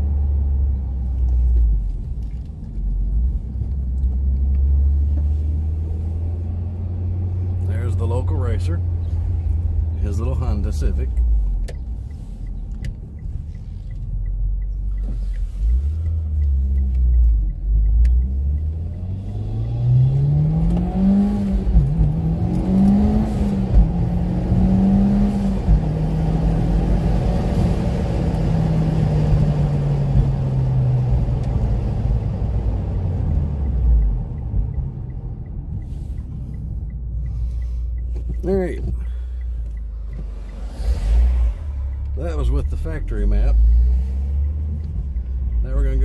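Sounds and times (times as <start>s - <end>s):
car engine accelerating hard: 14.7s - 36.6s, 37.3s - 46.0s.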